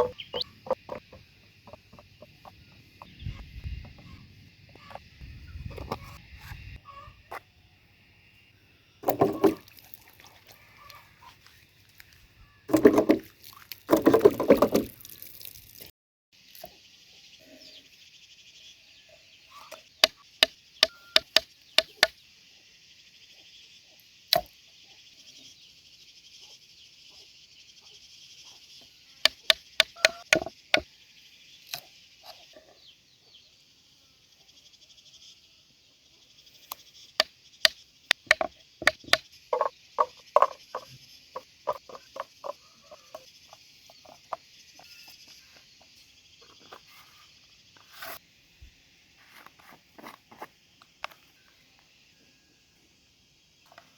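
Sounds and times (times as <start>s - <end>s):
high insect chorus: 0.0s - 53.9s
sharp knocks: 20.8s - 22.1s, 29.3s - 30.8s, 38.1s - 40.9s.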